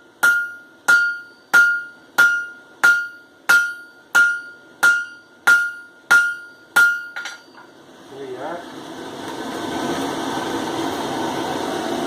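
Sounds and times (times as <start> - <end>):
hammer ringing on anvil: 0.2 - 7.7.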